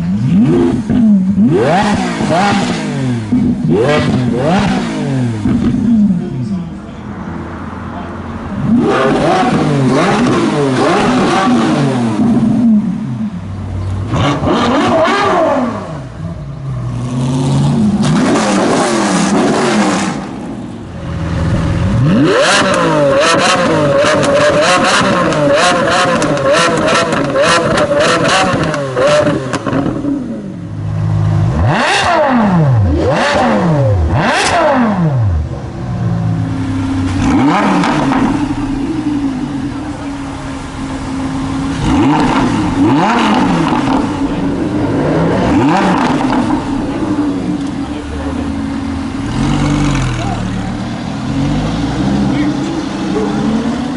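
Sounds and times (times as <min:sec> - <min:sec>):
car engines revving hard: 0:00.0 - 0:53.9
exhaust pops and crackles: 0:22.6 - 0:30.0.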